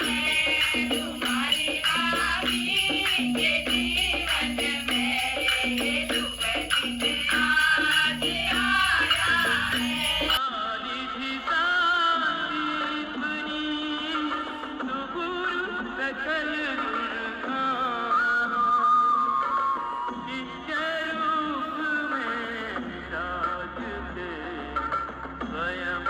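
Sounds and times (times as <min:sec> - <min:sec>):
duller-sounding song: 0:00.0 - 0:10.4
jingling shaken percussion: 0:00.0 - 0:10.4
music with steady beat: 0:00.0 - 0:10.4.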